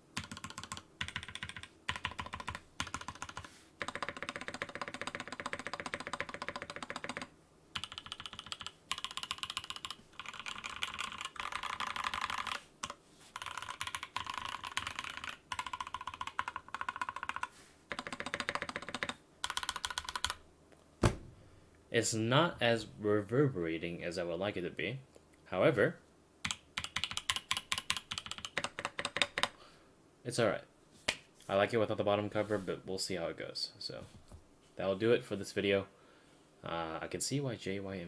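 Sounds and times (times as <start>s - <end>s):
mechanical keyboard typing: 0.2s - 20.4s, 26.4s - 29.6s.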